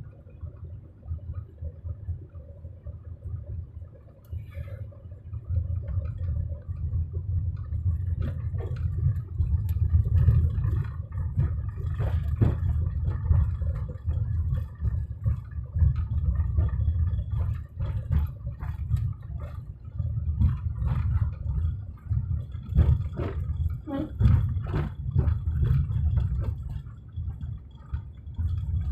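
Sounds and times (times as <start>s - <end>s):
car rumbling on rough track: 4.4s - 28.9s
knocks and rattles from bumps: 7.6s - 28.9s.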